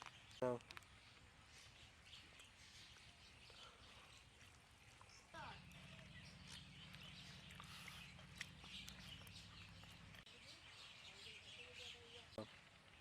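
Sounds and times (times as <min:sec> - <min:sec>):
small birds chirping: 0:00.0 - 0:13.0
low steady hum: 0:02.9 - 0:10.3.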